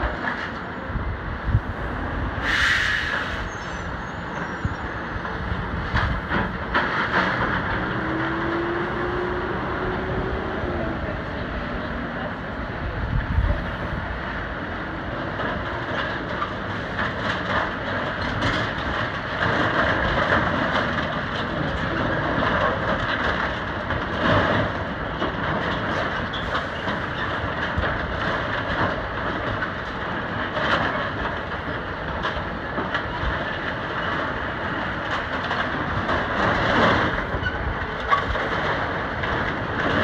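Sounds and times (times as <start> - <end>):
heavy mechanical rumbling: 0.0 - 40.0
knocks and clanks: 5.2 - 10.5, 15.2 - 40.0.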